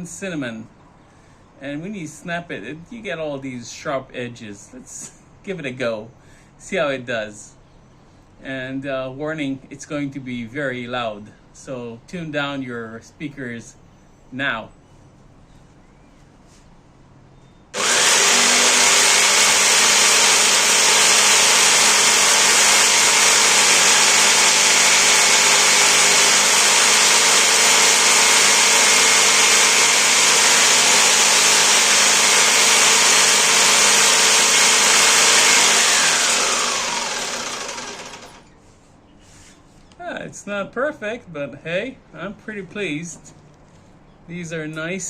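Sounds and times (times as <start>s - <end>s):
electric jigsaw cutting: 17.8s - 38.4s.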